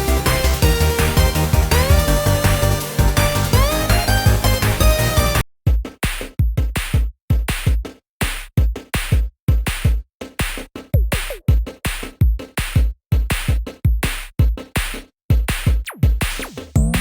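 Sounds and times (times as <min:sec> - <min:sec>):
electronic drum-machine beat: 0:00.0 - 0:17.0.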